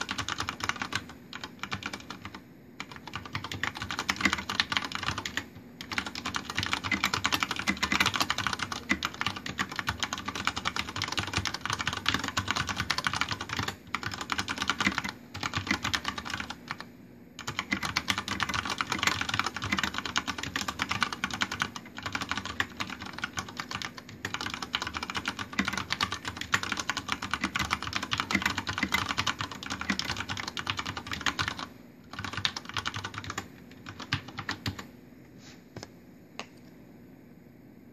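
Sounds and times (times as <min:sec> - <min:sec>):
fast typing on mechanical keyboard: 0:00.0 - 0:34.9.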